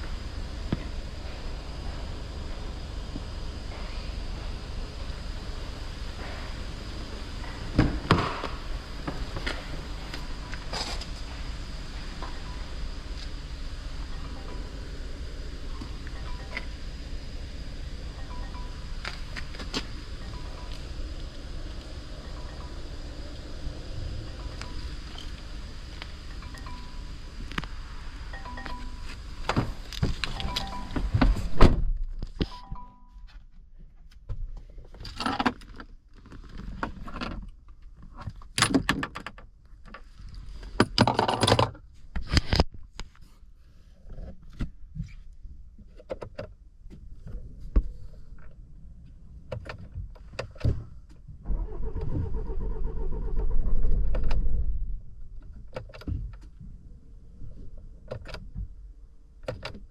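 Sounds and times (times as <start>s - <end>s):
dashboard warning chime: 12.2s - 13.0s, 14.0s - 14.8s, 15.9s - 17.1s, 18.0s - 31.6s, 32.4s - 33.3s.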